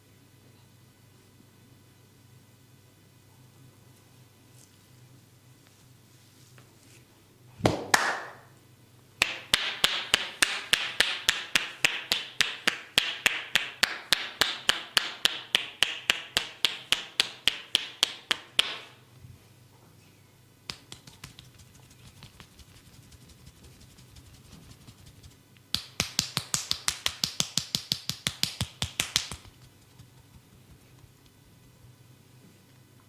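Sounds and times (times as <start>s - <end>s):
hands slapping body: 7.6s - 8.4s, 20.7s - 31.0s
rapid hand strikes: 9.2s - 19.0s, 20.7s - 31.8s.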